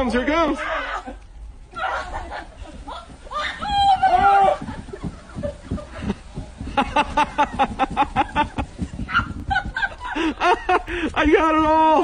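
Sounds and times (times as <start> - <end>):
person laughing: 4.8 - 11.0.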